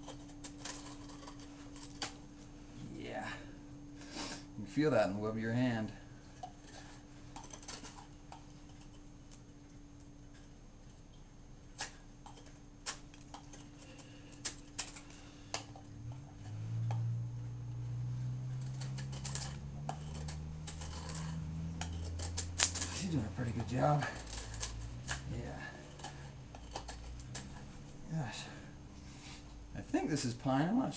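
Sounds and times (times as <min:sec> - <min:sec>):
low steady hum: 0:00.0 - 0:30.9
knife carving wood: 0:19.8 - 0:27.7.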